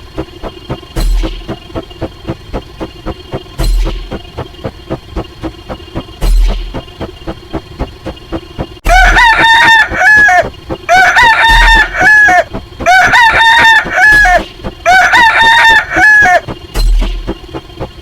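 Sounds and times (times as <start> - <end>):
low thudding beat: 0.0 - 18.0
rooster crowing: 8.9 - 16.5.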